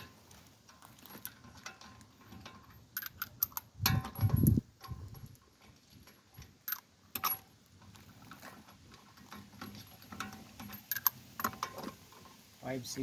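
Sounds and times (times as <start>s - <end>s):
metallic clinks of hand tools: 9.6s - 11.8s.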